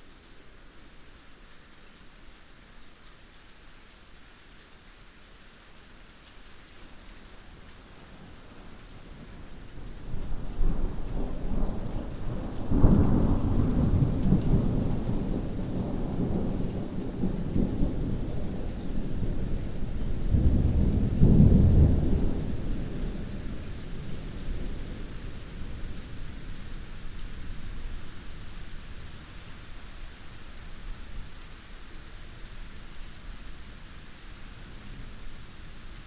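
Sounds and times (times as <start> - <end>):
heavy rain falling: 0.0 - 36.0
thunder rumbling: 10.0 - 29.1.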